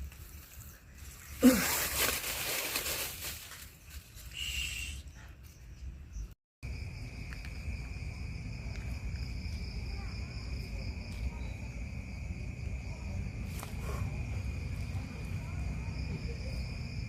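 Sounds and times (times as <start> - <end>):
low rumble of wind: 0.0 - 17.0.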